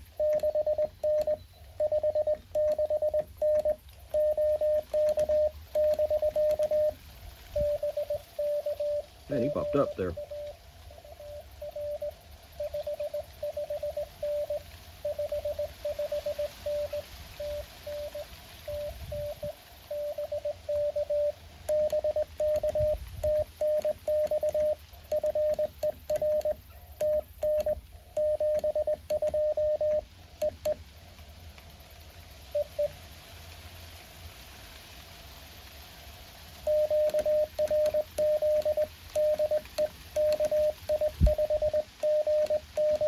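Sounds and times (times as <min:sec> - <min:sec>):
morse code tones: 0:00.0 - 0:30.8, 0:36.7 - 0:43.0
sharp clicks: 0:00.2 - 0:07.0, 0:21.7 - 0:31.7, 0:36.9 - 0:43.0.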